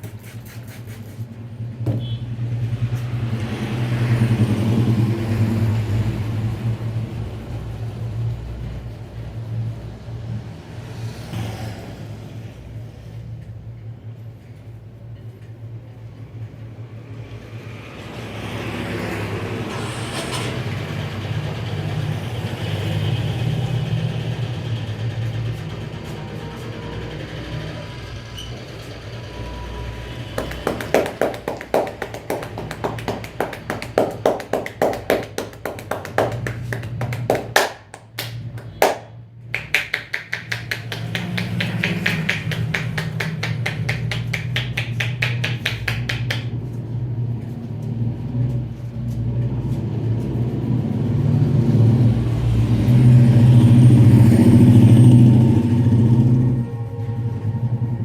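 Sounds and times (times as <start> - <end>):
vehicle engine rumbling: 19.3 - 58.0
hands slapping on a head: 30.4 - 46.5.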